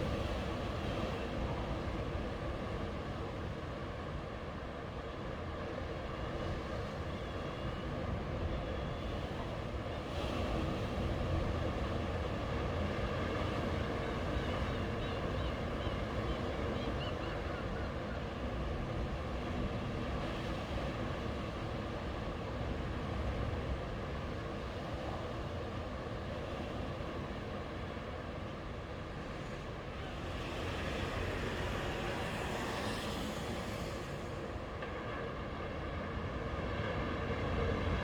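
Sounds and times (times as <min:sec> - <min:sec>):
sea waves on a beach: 0:09.1 - 0:38.0.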